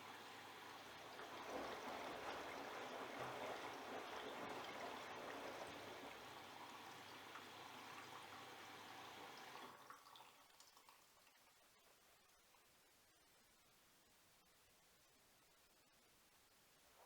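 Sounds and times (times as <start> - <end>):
water splashing in washing machine: 0.0 - 11.0.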